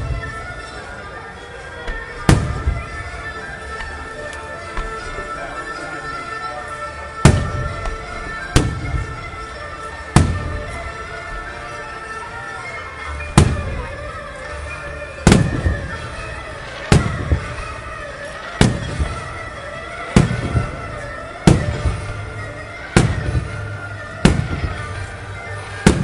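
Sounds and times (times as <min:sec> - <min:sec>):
fireworks booming: 0:01.9 - 0:03.1, 0:07.2 - 0:09.2, 0:10.2 - 0:10.9, 0:13.4 - 0:13.9, 0:15.2 - 0:16.1, 0:16.8 - 0:17.6, 0:18.6 - 0:19.4, 0:20.2 - 0:22.2, 0:22.9 - 0:23.6, 0:24.2 - 0:25.0.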